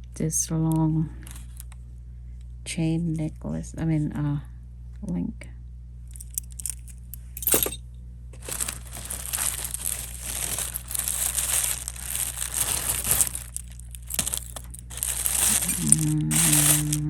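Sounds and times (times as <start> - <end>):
jewelry metallic clinks: 6.2 - 7.8, 8.4 - 17.0
plastic wrapping crinkling: 8.4 - 17.0.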